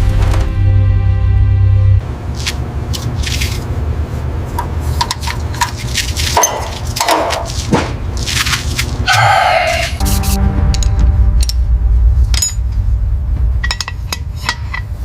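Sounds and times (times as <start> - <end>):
background music: 0.0 - 2.0, 10.0 - 13.9
low steady hum: 9.8 - 15.0.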